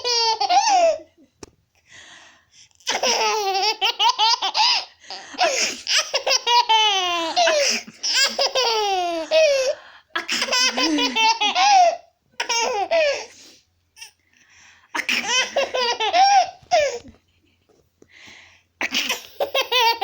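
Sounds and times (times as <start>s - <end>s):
baby laughing: 0.0s - 1.1s, 2.8s - 13.3s, 15.0s - 17.3s, 18.8s - 20.0s.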